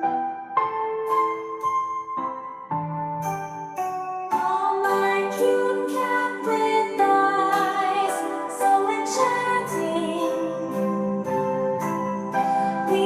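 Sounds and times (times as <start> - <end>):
woman singing gentle song: 4.3 - 11.3, 12.6 - 13.0.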